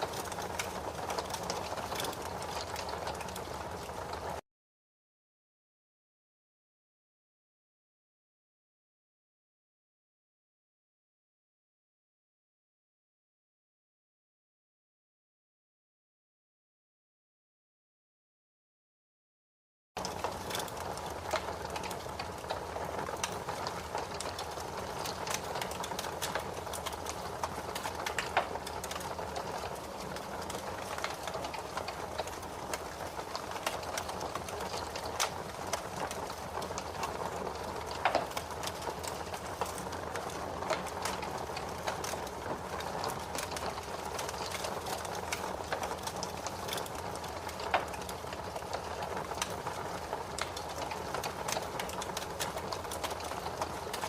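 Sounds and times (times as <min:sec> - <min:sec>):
fire crackling and popping: 0:00.0 - 0:04.4, 0:20.0 - 0:54.0.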